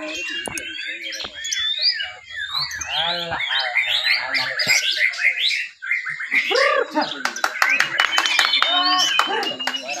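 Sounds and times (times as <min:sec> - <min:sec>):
songbirds singing: 0:00.0 - 0:10.0.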